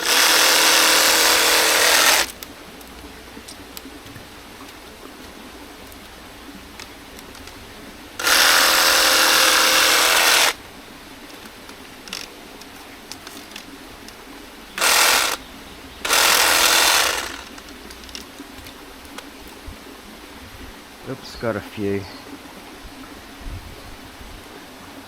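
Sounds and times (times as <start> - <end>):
reciprocating saw cutting: 0.0 - 2.4, 8.2 - 10.6, 14.8 - 15.4, 16.0 - 17.6.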